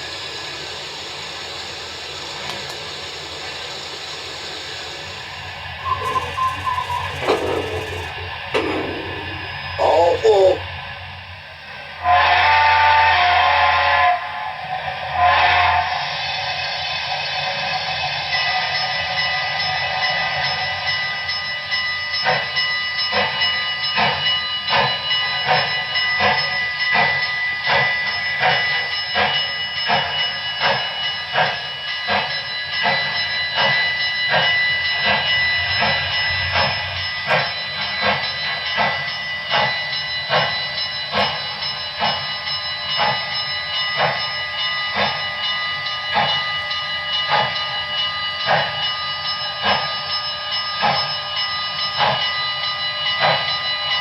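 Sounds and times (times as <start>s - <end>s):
steam exhaust chuffs: 5.3s - 10.6s
steady high tones: 5.8s - 10.6s.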